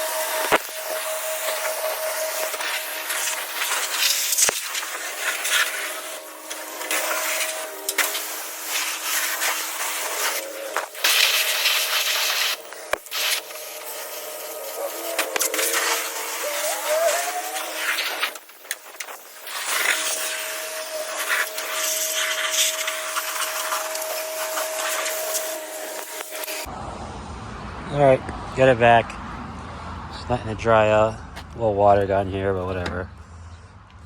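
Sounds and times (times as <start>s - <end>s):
pressure washer spraying water: 0.0s - 26.7s.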